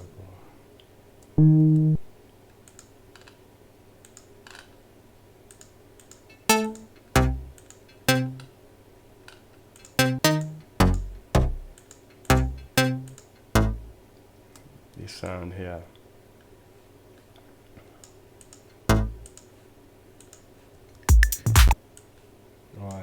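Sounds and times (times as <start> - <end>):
electronic bass notes: 1.4 - 2.1, 6.5 - 8.5, 10.0 - 14.0, 18.9 - 19.3
faint mouse clicks: 2.6 - 3.4, 4.0 - 4.8, 5.5 - 6.9, 17.2 - 19.6, 20.2 - 20.5.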